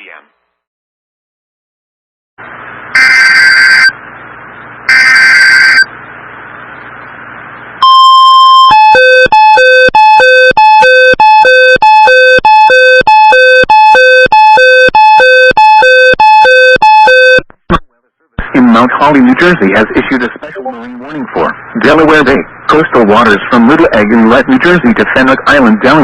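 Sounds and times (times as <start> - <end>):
loud two-tone alert signal: 3.0 - 3.9, 4.9 - 5.9, 7.8 - 17.4
digital data tone bursts: 3.0 - 4.0, 4.9 - 5.9
short steady beep: 7.8 - 17.4.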